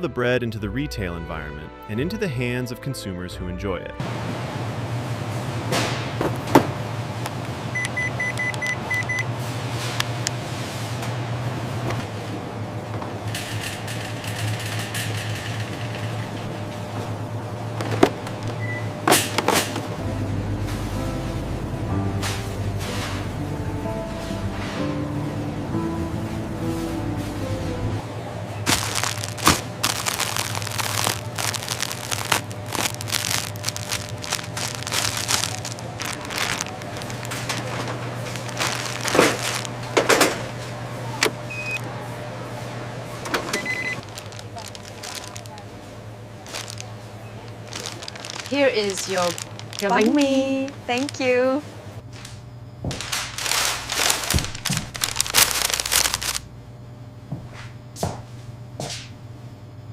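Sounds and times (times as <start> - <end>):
steady low hum: 4.0 - 59.9
crisp crunching and crackling: 28.7 - 40.6, 43.5 - 51.4, 52.9 - 56.5.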